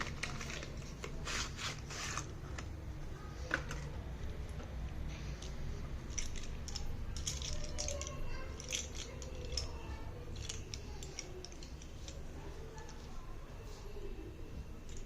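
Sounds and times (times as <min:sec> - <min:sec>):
packaging crackles and clicks: 0:00.0 - 0:02.7
low steady hum: 0:00.0 - 0:15.0.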